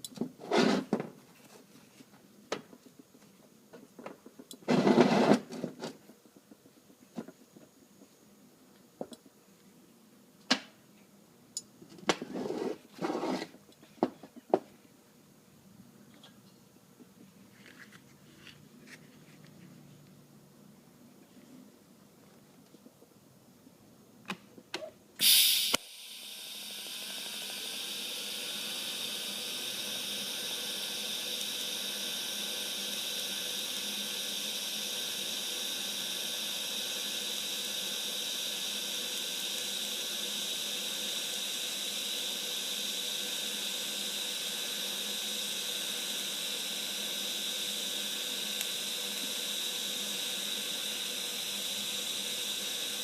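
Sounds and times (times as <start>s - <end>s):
welding arc hissing: 25.2s - 53.0s
welding arc striking: 25.2s - 53.0s.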